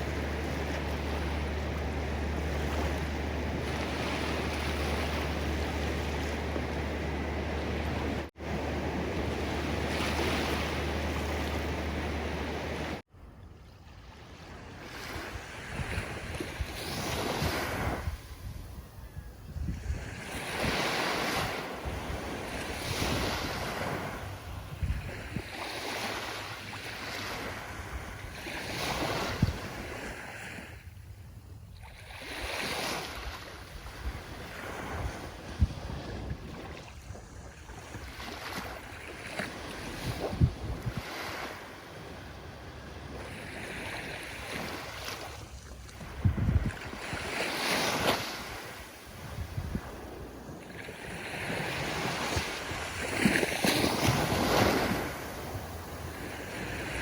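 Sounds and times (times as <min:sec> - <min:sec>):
ocean waves breaking: 0:00.0 - 0:18.8, 0:19.7 - 0:30.9, 0:31.8 - 0:57.0
wind thumps on microphone: 0:28.0 - 0:29.9, 0:39.3 - 0:41.2, 0:45.8 - 0:47.4, 0:49.2 - 0:50.4.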